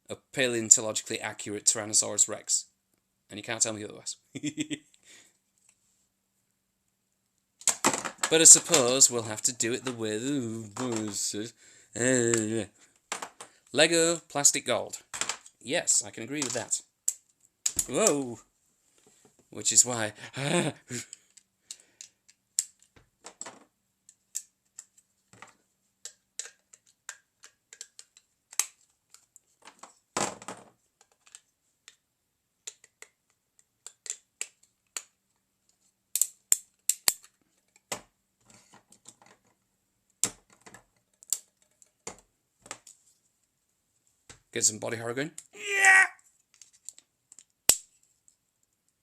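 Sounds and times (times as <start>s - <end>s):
plastic bricks clicking: 16.4s - 18.2s, 21.1s - 29.8s, 32.6s - 35.2s, 40.2s - 42.2s.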